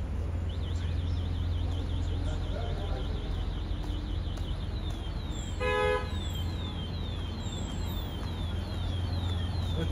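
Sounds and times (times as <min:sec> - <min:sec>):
vehicle horn toot: 0:05.6 - 0:06.2.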